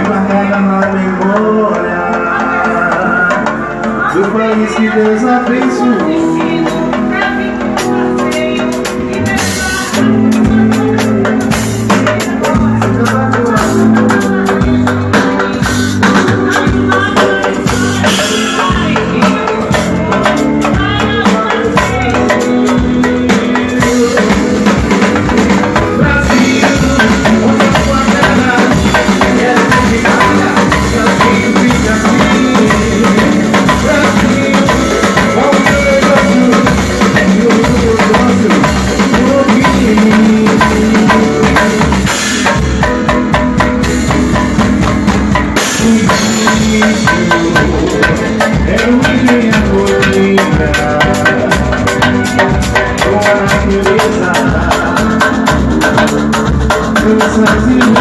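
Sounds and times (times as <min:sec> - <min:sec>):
drum-kit beat: 0:00.0 - 0:58.0
live band instrumental music: 0:00.0 - 0:58.0.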